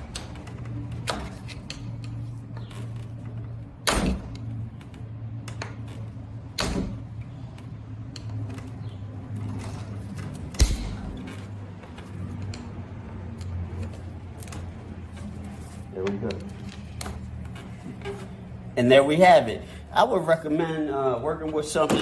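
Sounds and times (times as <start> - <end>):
low hum: 0.0 - 11.6
sharp snaps and clanks: 9.6 - 14.7.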